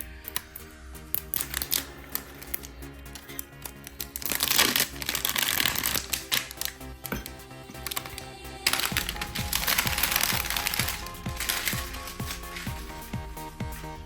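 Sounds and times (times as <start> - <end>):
background music: 0.0 - 14.0
plastic wrap crinkling: 7.8 - 13.0.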